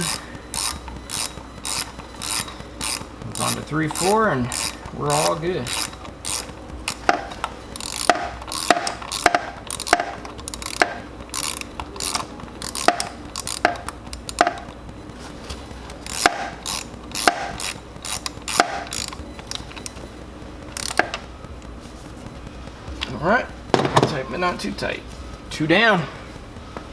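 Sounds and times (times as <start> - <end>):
ratchet wrench clicking: 0.0 - 14.8, 15.9 - 20.0, 20.7 - 21.3.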